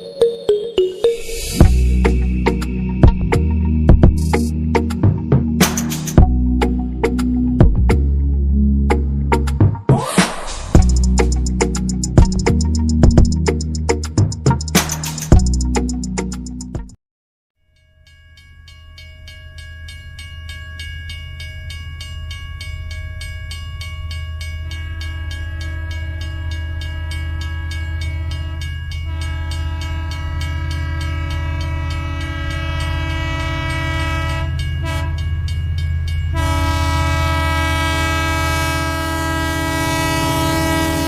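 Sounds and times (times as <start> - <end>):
sustained horn-like chord: 29.1 - 35.2, 36.3 - 41.0.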